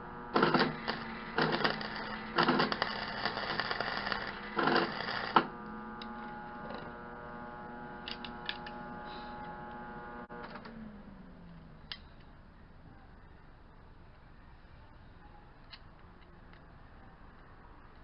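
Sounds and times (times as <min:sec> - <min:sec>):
welder arc crackling: 0:00.0 - 0:10.5
machine hum: 0:00.0 - 0:11.9.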